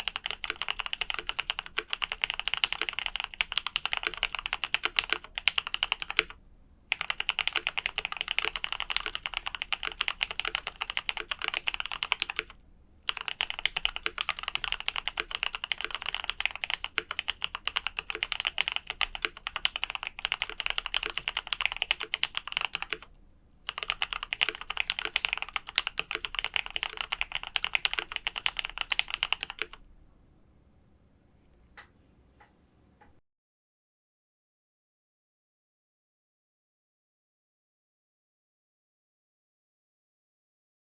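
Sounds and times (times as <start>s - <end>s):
fast typing on mechanical keyboard: 0.0s - 23.1s, 23.7s - 29.8s.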